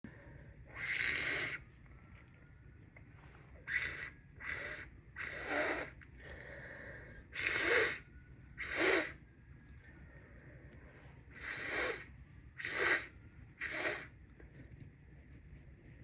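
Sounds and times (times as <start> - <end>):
congested nose sniffling: 0.7 - 1.6, 3.6 - 6.0, 7.3 - 8.0, 8.6 - 9.2, 11.3 - 14.2.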